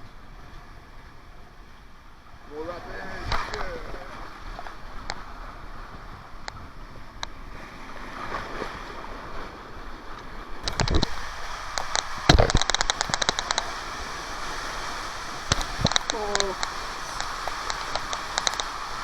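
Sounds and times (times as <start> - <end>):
water rushing along slide: 2.4 - 19.0
isolated clicks: 10.6 - 13.8, 15.5 - 19.0.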